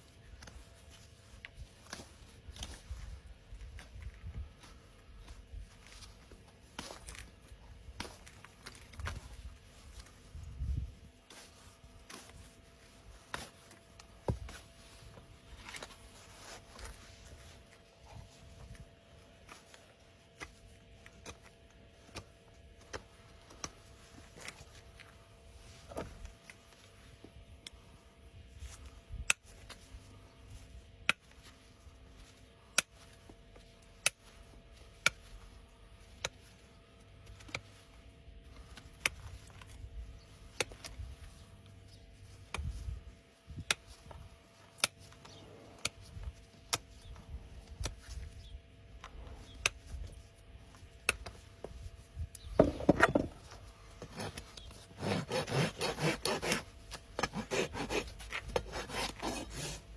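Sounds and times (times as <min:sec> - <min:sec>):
rasp strokes across hoof: 0:52.6 - 0:59.9
hoof trimming clicks: 0:54.0 - 0:59.8.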